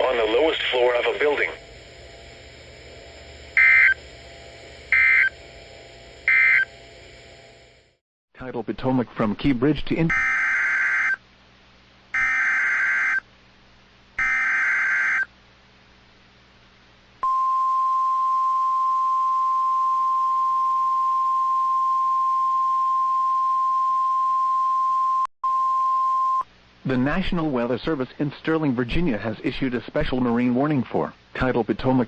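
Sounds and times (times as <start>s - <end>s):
buzzing data bursts: 0.0s - 7.9s
steady warning alarm tone: 0.0s - 8.0s, 10.1s - 11.2s, 12.2s - 13.2s, 14.2s - 15.3s.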